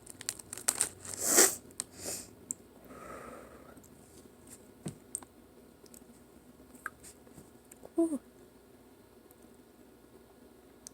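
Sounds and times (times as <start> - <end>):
person sniffing: 1.2 - 2.3
soft breath out: 2.0 - 3.8.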